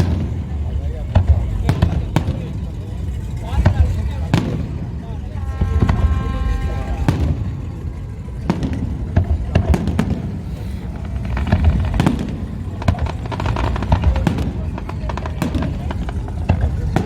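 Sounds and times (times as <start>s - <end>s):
low steady rumble: 0.0s - 17.0s
fireworks cracking and popping: 8.4s - 17.0s.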